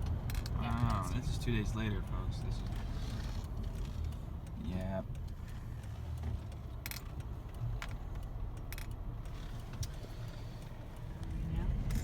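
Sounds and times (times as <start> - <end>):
car road and engine rumble: 0.0 - 12.0.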